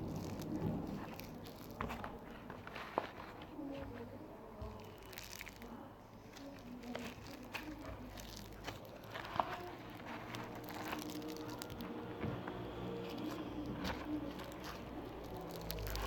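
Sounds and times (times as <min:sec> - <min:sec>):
slime squeezed by hand: 0:00.0 - 0:02.2, 0:04.7 - 0:05.7, 0:06.3 - 0:16.0.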